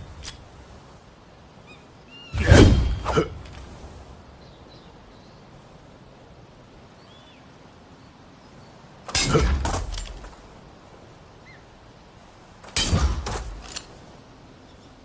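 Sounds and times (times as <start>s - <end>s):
spear clash impacts: 2.4s - 3.6s, 9.1s - 10.4s, 12.6s - 13.9s.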